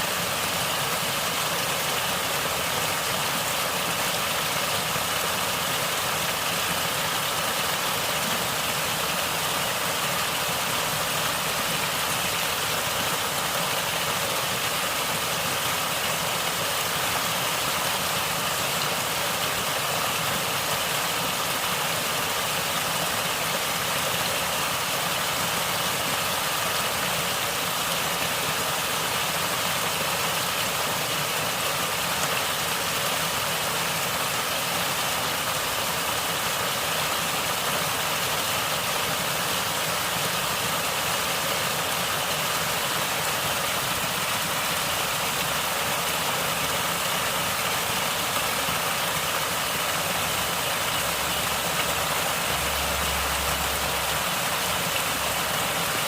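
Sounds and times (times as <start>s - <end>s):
stream water flowing: 0.0s - 56.0s.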